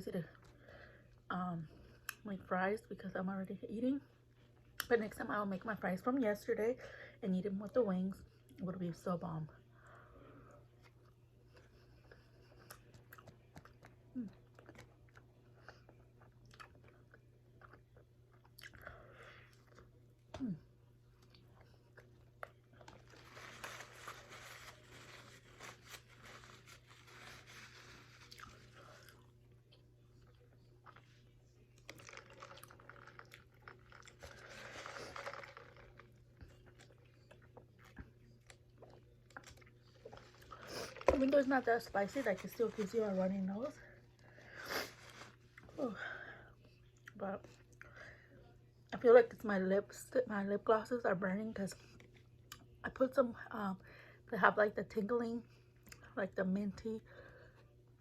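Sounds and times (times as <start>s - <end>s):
person chewing wetly: 12.5s - 20.0s, 28.2s - 41.2s.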